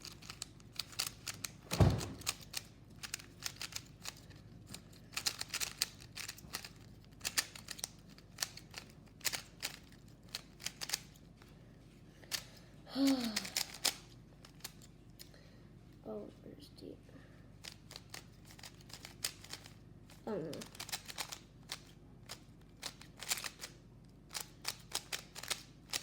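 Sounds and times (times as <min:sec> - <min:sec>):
puzzle cube plastic clicks: 0:00.0 - 0:11.2, 0:12.2 - 0:15.3, 0:17.6 - 0:26.0
loud thump: 0:01.7 - 0:02.3.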